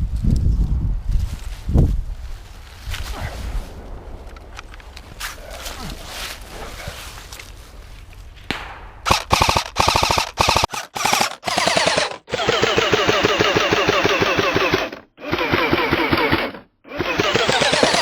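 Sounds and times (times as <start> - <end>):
airsoft rifle bursts: 9.1 - 18.0.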